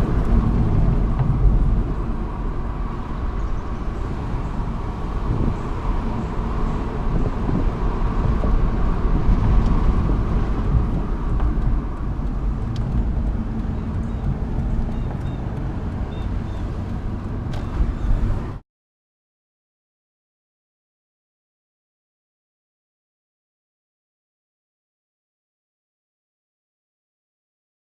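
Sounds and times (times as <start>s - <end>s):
road and engine rumble: 0.0s - 18.6s.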